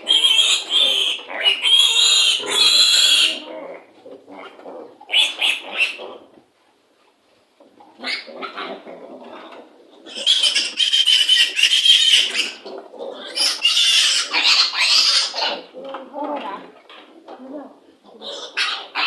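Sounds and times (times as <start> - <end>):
piglets squealing: 0.0 - 3.4, 5.1 - 6.0, 10.1 - 15.6.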